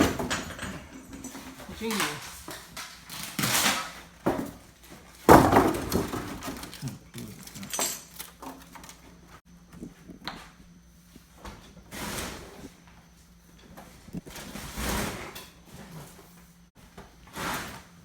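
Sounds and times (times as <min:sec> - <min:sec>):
refrigerator scraping on tiled floor: 0:11.2 - 0:18.0.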